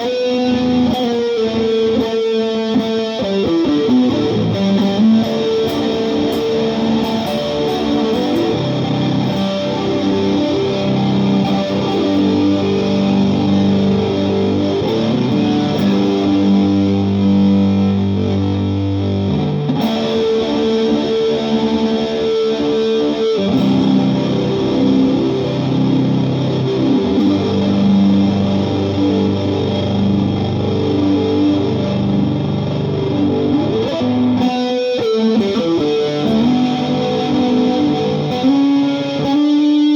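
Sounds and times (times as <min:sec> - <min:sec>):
distorted electric guitar chords: 0:00.0 - 0:39.9.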